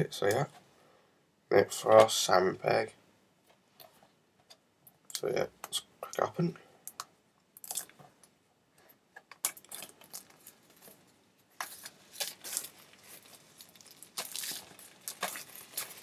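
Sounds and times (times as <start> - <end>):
scratchy plastic rustling: 9.4 - 16.0.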